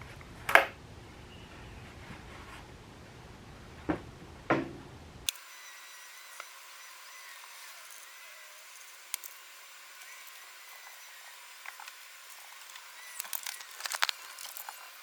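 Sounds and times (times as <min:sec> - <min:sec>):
scratchy rubbing: 0:11.8 - 0:15.0.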